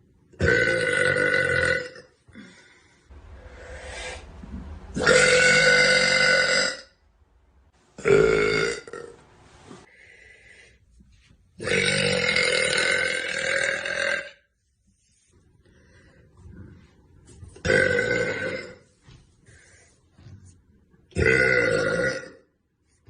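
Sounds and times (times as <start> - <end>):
woman burping loudly: 0.3 - 2.6, 5.0 - 7.0, 8.0 - 9.2, 11.6 - 14.4, 17.6 - 18.8, 21.1 - 22.5.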